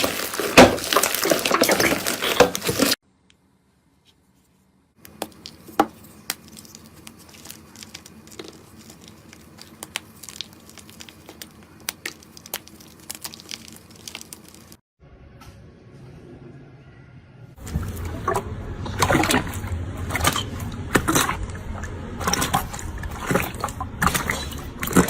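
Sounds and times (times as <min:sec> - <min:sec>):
slime crackling and popping: 0:05.0 - 0:14.8.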